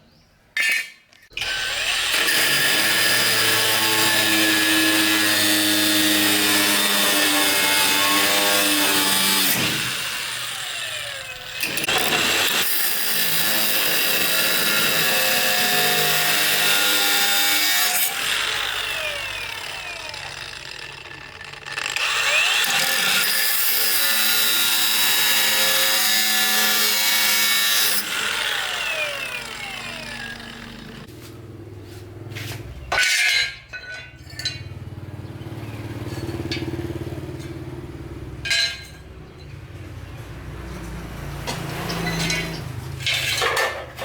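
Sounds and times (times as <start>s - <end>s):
power tool sawing material: 1.4s - 31.1s.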